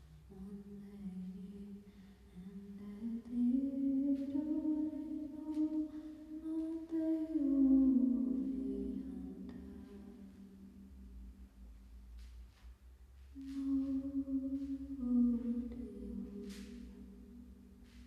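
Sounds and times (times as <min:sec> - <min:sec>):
person humming: 0:13.4 - 0:18.0.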